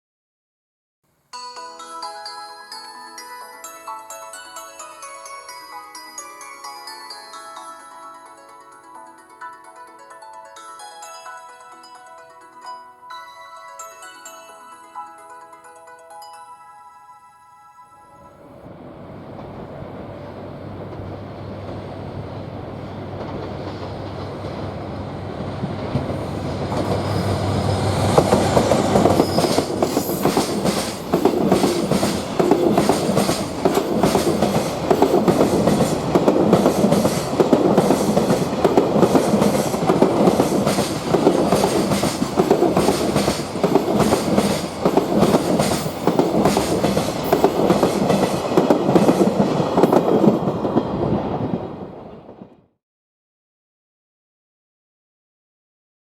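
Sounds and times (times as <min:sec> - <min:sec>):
locomotive engine drone: 0:18.2 - 0:29.8
train wheels clickety-clack: 0:19.4 - 0:51.4.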